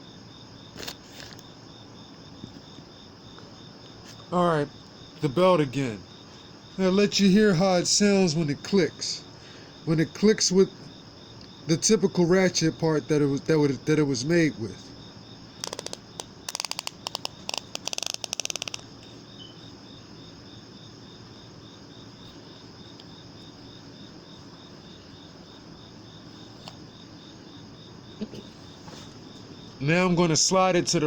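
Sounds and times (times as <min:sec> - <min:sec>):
crickets chirping: 0:00.0 - 0:31.0
ratchet belt buckle clicking: 0:15.6 - 0:18.9.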